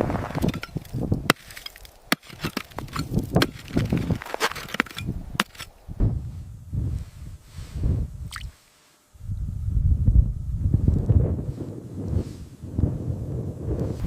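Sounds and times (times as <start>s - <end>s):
sharp knocks and cracks: 0.4s - 5.7s
dull low thumps: 5.0s - 8.5s.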